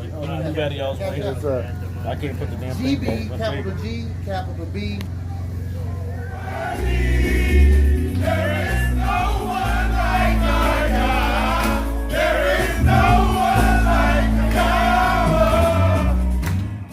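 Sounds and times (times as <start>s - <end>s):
deep sustained bass line: 1.8s - 16.9s
choir singing with vibrato: 6.2s - 16.9s.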